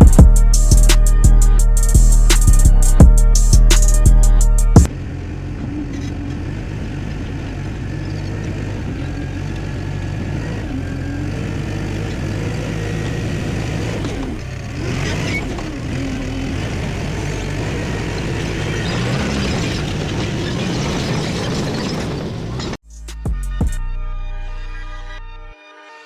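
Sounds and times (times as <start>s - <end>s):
dozer diesel engine under load: 4.8s - 22.8s.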